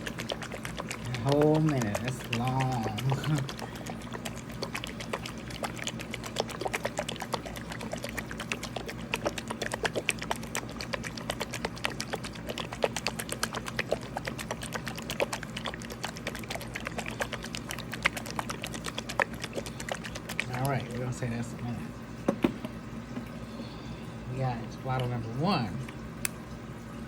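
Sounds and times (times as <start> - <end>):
plastic bottle shaken with sloshing liquid: 0.0 - 21.5.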